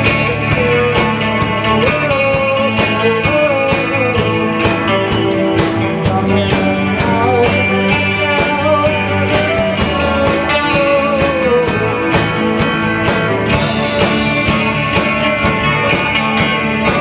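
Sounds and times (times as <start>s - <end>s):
drums steady beat: 0.0s - 17.0s
rock band playing: 0.0s - 17.0s.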